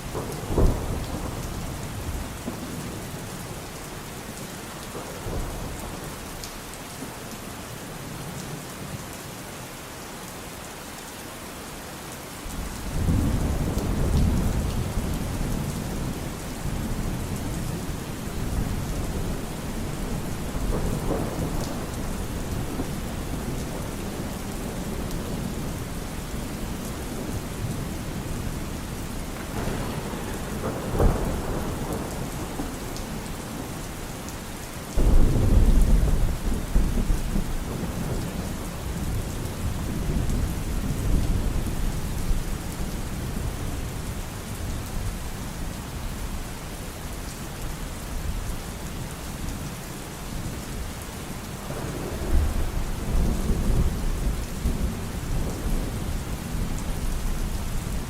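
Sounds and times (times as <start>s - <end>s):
thunder rumbling: 0.0s - 3.6s, 12.5s - 45.1s, 51.5s - 58.0s
steady rain falling: 0.0s - 58.0s.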